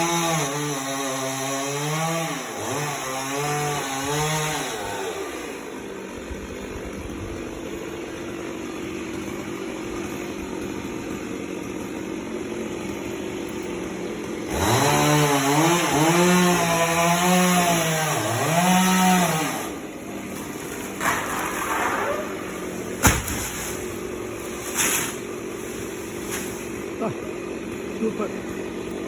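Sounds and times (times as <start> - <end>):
chainsaw idling and revving: 0.0 - 29.0
sharp knocks: 23.0 - 23.6.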